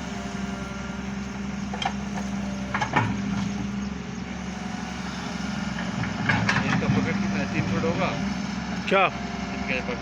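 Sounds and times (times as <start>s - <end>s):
heavy machine engine running: 0.0s - 10.0s.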